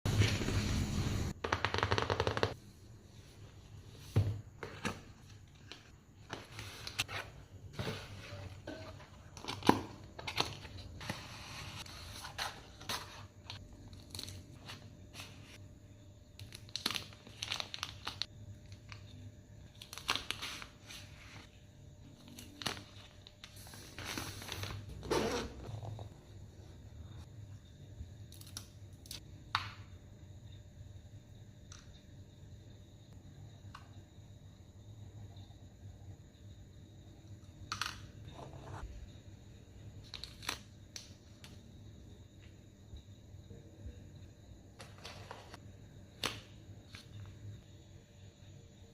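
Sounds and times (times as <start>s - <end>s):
wrapping crinkling and rustling: 16.4s - 18.9s.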